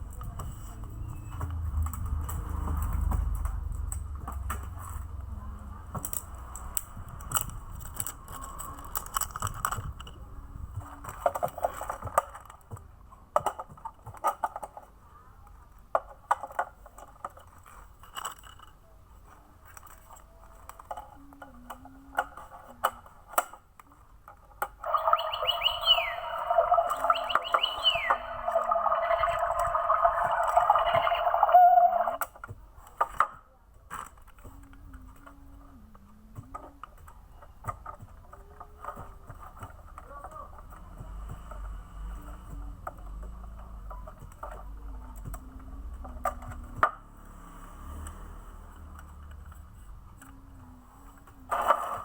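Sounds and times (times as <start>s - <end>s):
plastic toy clicking and rattling: 5.9s - 10.2s, 15.7s - 24.7s
electronic toy bird chirping: 24.8s - 32.2s.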